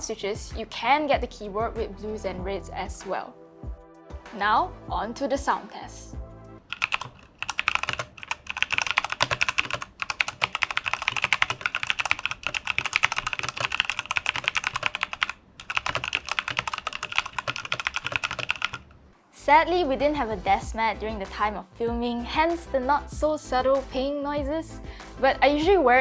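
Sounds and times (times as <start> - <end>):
mechanical keyboard clacks: 6.7 - 18.9
pinging keys: 6.7 - 18.9.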